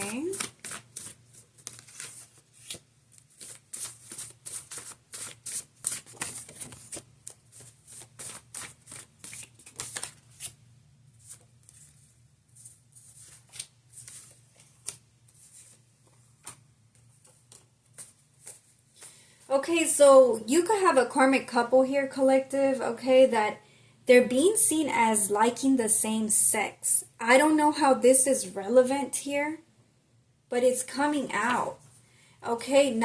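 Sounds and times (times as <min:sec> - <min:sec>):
cards being shuffled: 0:00.0 - 0:10.6, 0:11.2 - 0:19.1.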